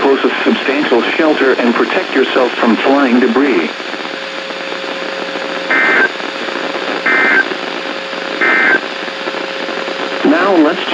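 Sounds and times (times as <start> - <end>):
radio hiss: 0.0 - 10.9
warbling digital data tones: 5.7 - 6.1, 7.1 - 7.5, 8.4 - 8.8.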